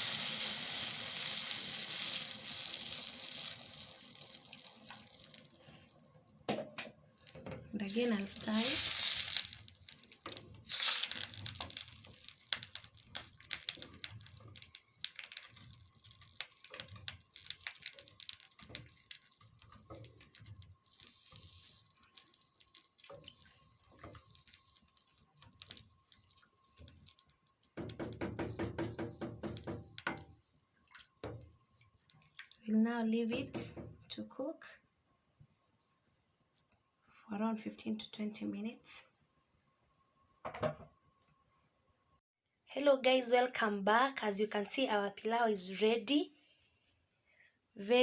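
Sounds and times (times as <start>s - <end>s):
water sloshing in pot: 1.7s - 32.7s.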